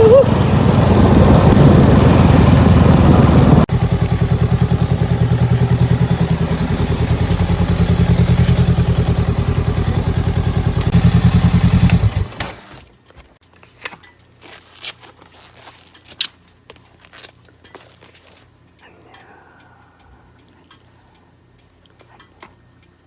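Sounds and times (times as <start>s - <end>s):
loud rushing noise: 0.0s - 3.7s
motorcycle engine idling: 0.0s - 12.7s.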